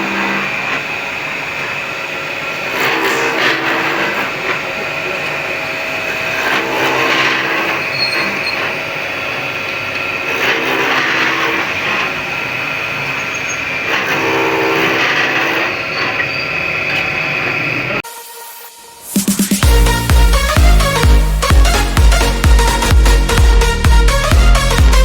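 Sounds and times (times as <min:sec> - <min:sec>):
turning tool cutting wood: 0:00.0 - 0:18.0, 0:19.2 - 0:25.0
wood lathe motor running: 0:00.0 - 0:18.0, 0:19.6 - 0:25.0.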